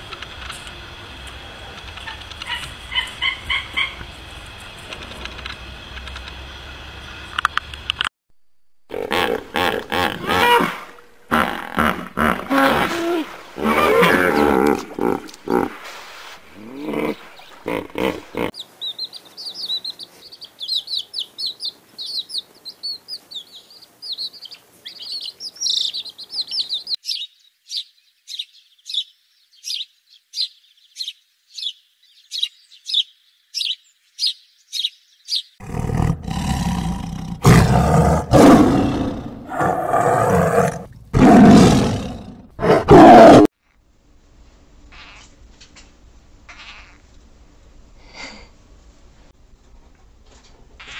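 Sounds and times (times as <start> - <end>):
large animal roaring: 8.9 - 18.5, 35.6 - 43.5
small bird chirping: 16.8 - 35.6.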